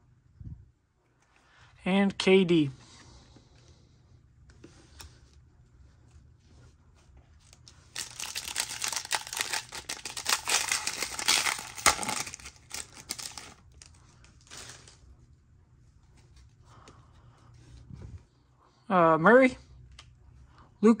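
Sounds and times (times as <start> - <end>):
foil wrapper tearing and crinkling: 7.5 - 15.0.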